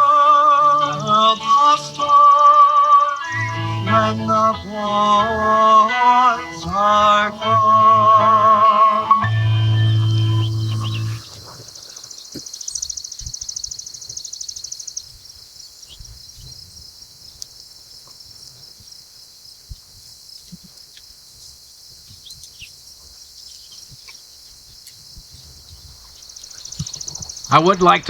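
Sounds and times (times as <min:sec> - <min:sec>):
faint high chirps: 0:00.0 - 0:15.1.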